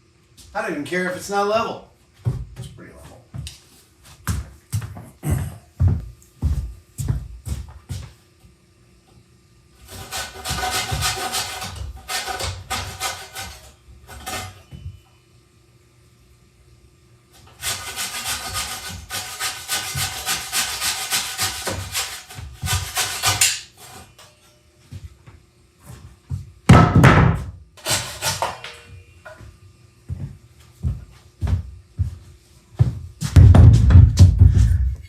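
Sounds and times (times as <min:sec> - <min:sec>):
hand tool rubbing wood: 0:09.8 - 0:14.8, 0:17.4 - 0:24.3
heavy knocks: 0:33.4 - 0:34.8.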